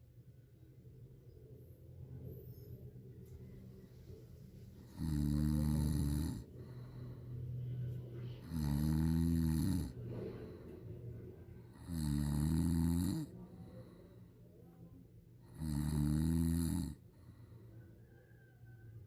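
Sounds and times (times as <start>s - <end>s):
quiet breathing: 0.7s - 19.0s
person snoring loudly: 4.8s - 6.9s, 8.4s - 10.0s, 11.7s - 13.3s, 15.4s - 17.0s.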